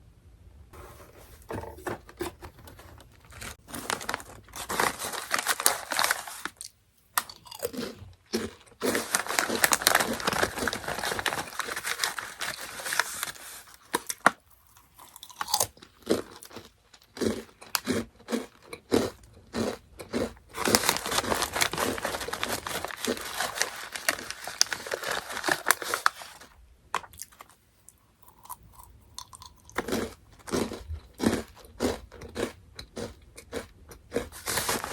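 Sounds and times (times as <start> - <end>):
snack being crunched and chewed: 4.4 - 12.6, 13.8 - 26.4.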